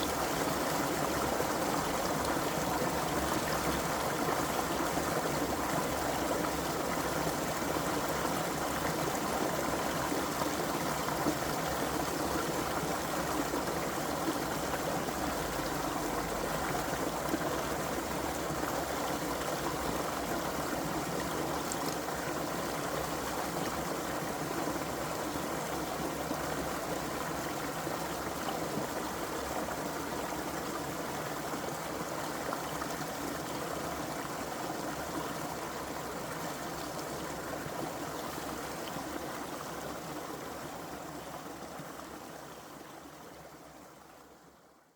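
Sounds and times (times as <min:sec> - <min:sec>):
creek water flowing: 0:00.0 - 0:44.8.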